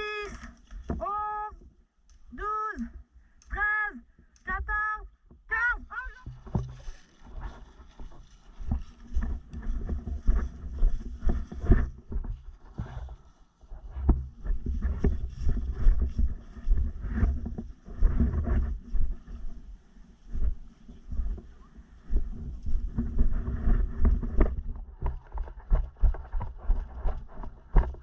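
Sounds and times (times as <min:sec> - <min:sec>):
microphone handling noise: 0:04.2 - 0:28.0
wind rumbling on microphone: 0:06.1 - 0:28.0.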